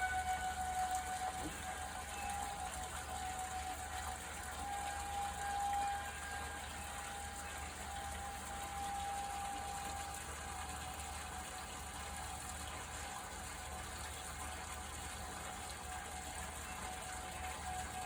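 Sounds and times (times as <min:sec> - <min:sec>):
warning siren steady tone: 0:00.0 - 0:12.5, 0:15.1 - 0:18.0
constant hiss: 0:00.0 - 0:18.0.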